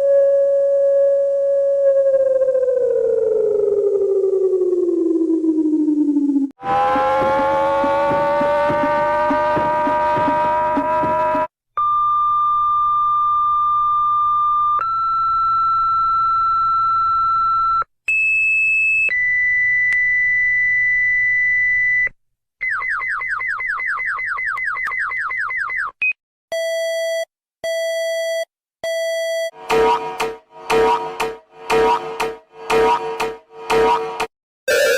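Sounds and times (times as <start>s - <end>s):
buzzy beeps: 29.6s - 34.9s
held alert tones: 29.6s - 34.9s.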